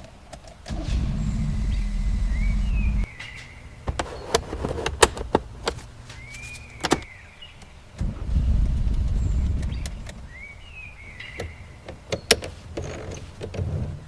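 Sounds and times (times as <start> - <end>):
low mechanical rumble: 0.6 - 4.0, 7.8 - 11.8.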